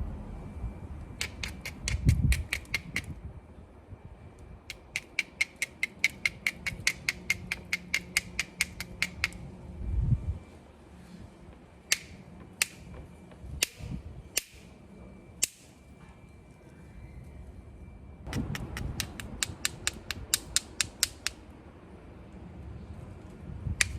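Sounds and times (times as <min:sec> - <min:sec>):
stone knapping clicks: 0:01.2 - 0:03.1, 0:04.7 - 0:09.4, 0:11.9 - 0:12.8, 0:18.3 - 0:21.4.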